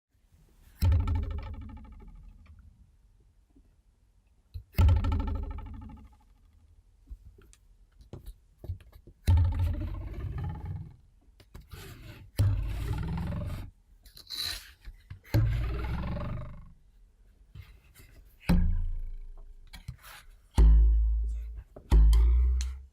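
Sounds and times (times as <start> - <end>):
plastic ruler twanging on desk: 4.6 - 6.4, 12.4 - 13.7, 15.2 - 16.7.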